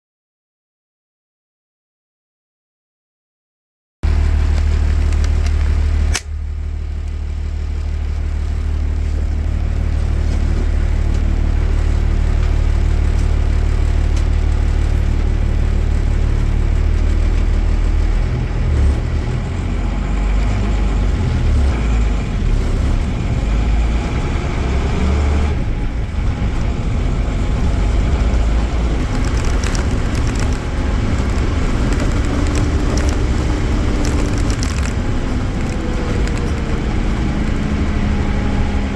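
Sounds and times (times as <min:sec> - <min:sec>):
bus diesel engine running: 0:04.0 - 0:38.9
sharp click: 0:05.0 - 0:06.4.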